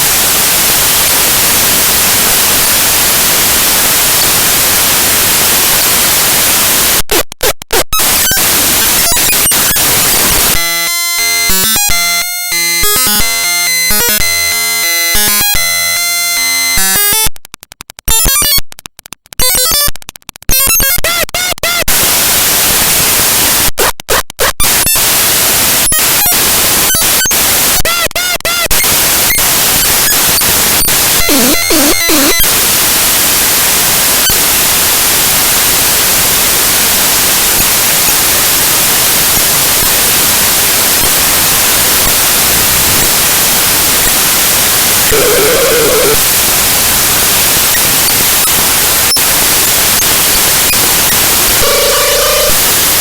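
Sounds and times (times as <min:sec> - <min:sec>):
harsh static hiss: 0:00.0 - 0:17.2, 0:20.6 - 0:23.8, 0:24.6 - 0:53.0
clicks: 0:15.2 - 0:22.4.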